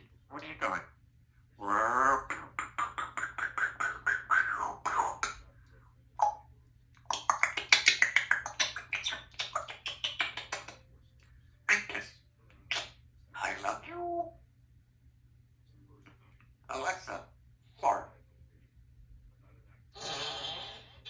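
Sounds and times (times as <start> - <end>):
parrot clicking and popping: 7.0 - 10.8.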